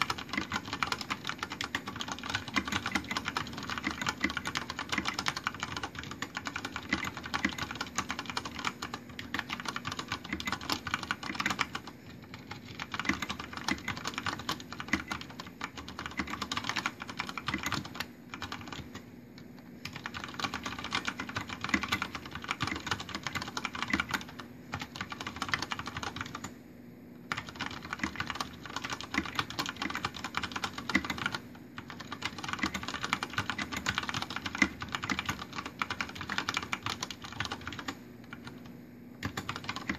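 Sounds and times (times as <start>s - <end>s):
mechanical keyboard typing: 0.0s - 19.1s, 19.8s - 26.5s, 27.3s - 39.9s.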